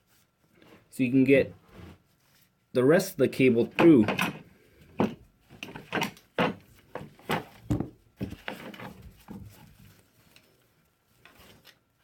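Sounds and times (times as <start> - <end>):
rope scraping and knocking: 3.5 - 10.4.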